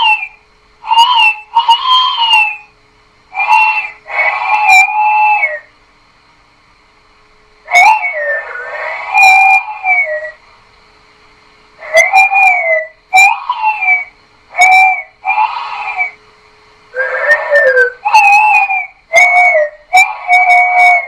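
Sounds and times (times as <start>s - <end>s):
altered voice dinosaur calls: 0.9s - 2.6s, 3.4s - 5.6s, 7.7s - 10.4s, 11.8s - 16.2s, 17.0s - 21.0s.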